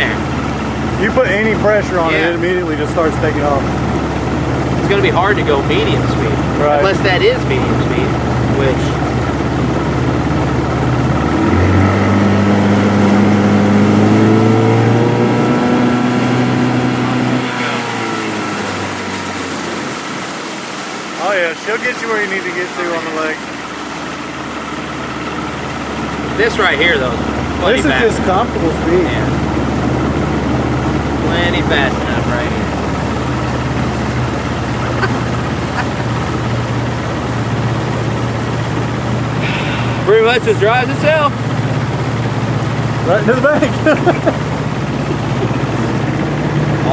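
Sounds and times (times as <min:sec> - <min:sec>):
outboard motor running: 0:00.0 - 0:46.9
water noise: 0:00.0 - 0:46.9
wind: 0:00.0 - 0:46.9.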